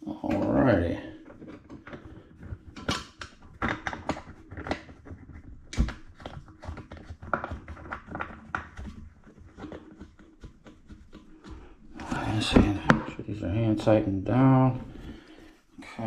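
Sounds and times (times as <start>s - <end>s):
plastic toilet seat clicks and knocks: 12.4s - 13.3s.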